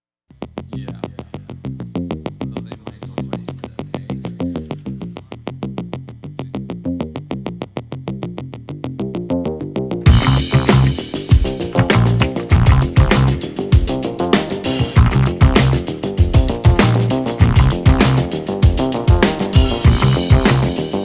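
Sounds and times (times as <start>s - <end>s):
fuller music beat: 10.1s - 21.0s
synthesizer playing quick notes: 10.1s - 21.0s.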